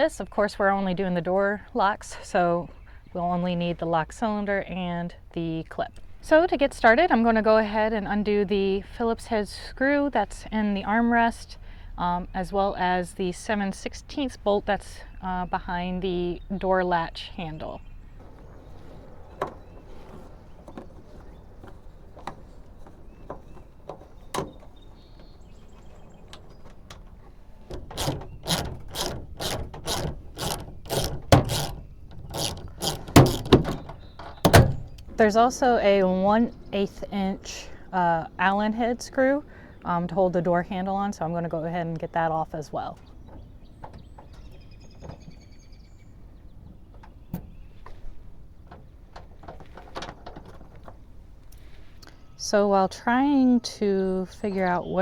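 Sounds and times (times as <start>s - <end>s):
hand ratchet clicking: 27.7s - 33.9s.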